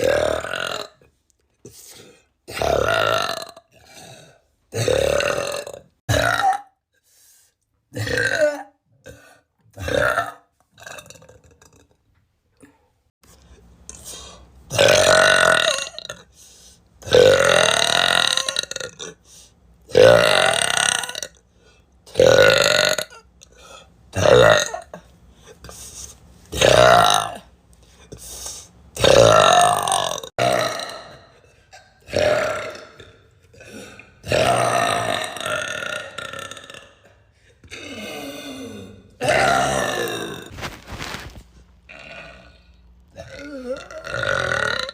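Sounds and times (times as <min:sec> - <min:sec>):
loud drawn-out burps: 0:00.0 - 0:01.1, 0:02.5 - 0:06.8, 0:07.9 - 0:12.0, 0:14.7 - 0:16.3, 0:17.0 - 0:19.2, 0:19.9 - 0:21.4, 0:22.1 - 0:23.3, 0:24.2 - 0:25.1, 0:26.6 - 0:27.5, 0:29.0 - 0:40.7, 0:41.9 - 0:44.9.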